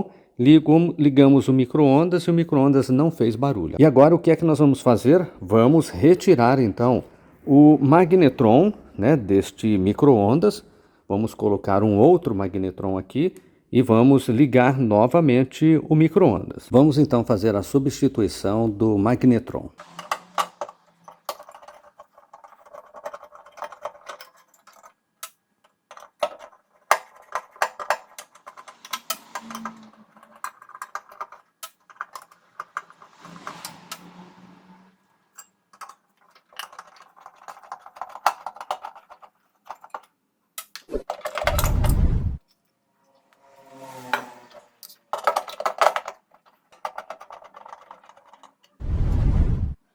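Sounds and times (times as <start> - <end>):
metal tools clinking and rattling: 19.8 - 33.8, 35.3 - 41.8, 44.8 - 48.8
rush of noise: 41.5 - 42.4, 48.8 - 49.8.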